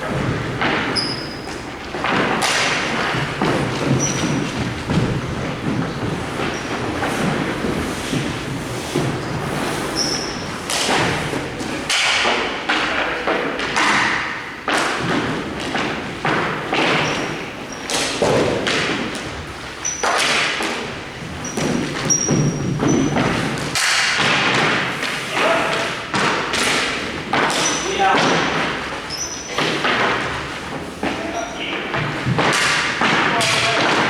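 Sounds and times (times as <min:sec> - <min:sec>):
hockey sticks and ball striking: 0:00.0 - 0:34.0
short high squeaks: 0:01.0 - 0:01.6, 0:09.9 - 0:10.5, 0:29.1 - 0:29.6.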